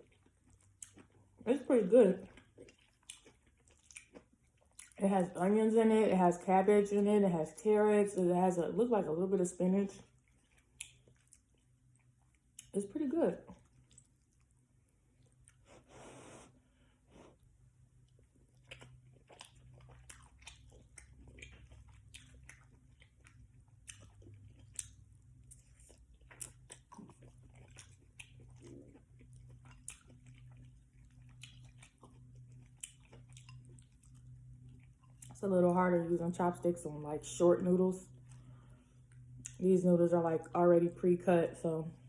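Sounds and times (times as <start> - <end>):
chewing noodles: 0.0 - 5.0, 9.9 - 12.8, 13.4 - 16.4, 17.1 - 35.4.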